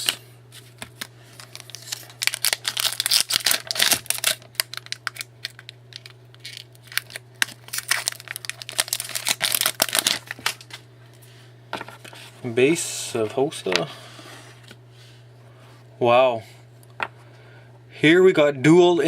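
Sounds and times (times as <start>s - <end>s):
cards rustling: 0.0s - 10.8s
foil wrapper crinkling and tearing: 0.0s - 10.9s
steady low hum: 0.0s - 19.0s.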